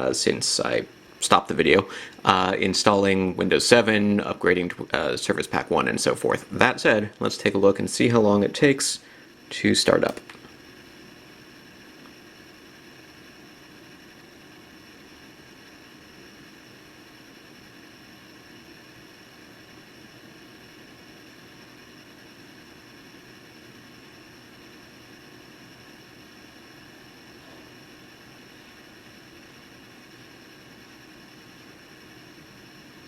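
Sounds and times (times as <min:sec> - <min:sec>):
high whining tones: 0:00.0 - 0:17.7
faint hiss and hum: 0:00.0 - 0:33.0.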